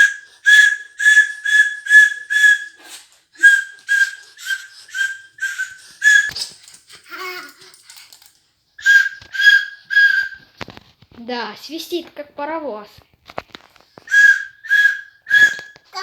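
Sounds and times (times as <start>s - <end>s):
toy whistle toots: 0.0s - 6.5s, 8.8s - 10.4s, 14.1s - 16.0s.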